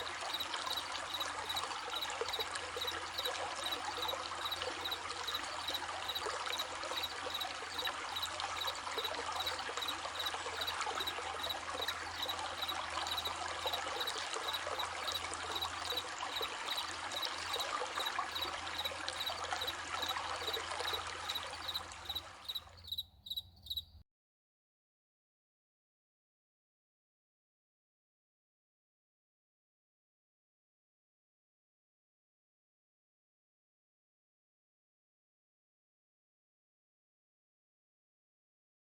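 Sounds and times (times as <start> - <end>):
babbling stream: 0.0 - 22.8
crickets chirping: 0.0 - 23.9.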